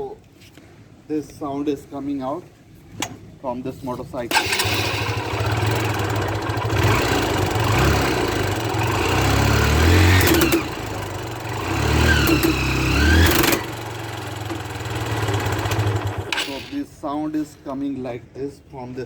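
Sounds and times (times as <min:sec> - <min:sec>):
motorcycle engine revving: 0:04.3 - 0:16.8.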